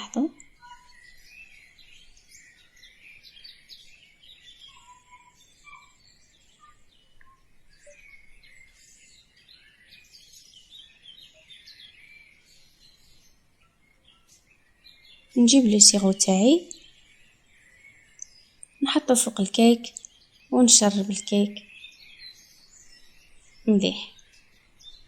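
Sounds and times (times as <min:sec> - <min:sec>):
faint birds chirping: 0:00.0 - 0:25.0.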